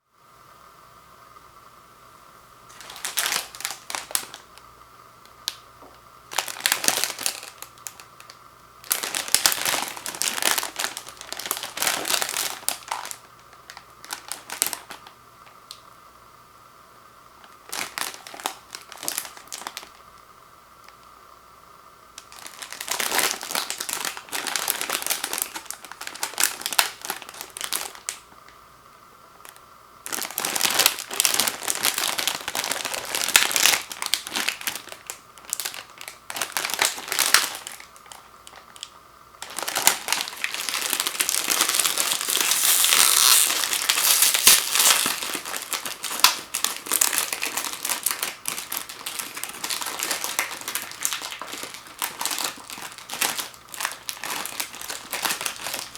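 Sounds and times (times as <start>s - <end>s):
plastic packaging crinkling: 2.7s - 4.6s, 6.3s - 15.8s, 17.4s - 20.2s, 22.2s - 28.6s, 29.4s - 55.9s.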